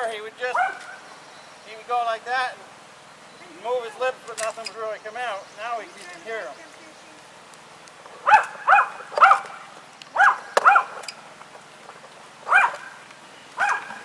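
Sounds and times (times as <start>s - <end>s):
dog barking: 0.5s - 1.0s, 8.2s - 9.6s, 10.2s - 11.0s, 12.5s - 13.0s, 13.6s - 14.0s.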